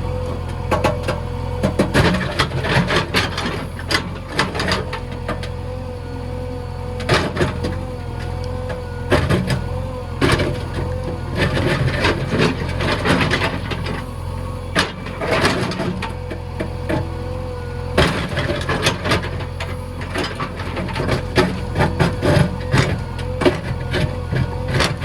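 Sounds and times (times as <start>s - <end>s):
diesel engine running: 0.0s - 25.0s.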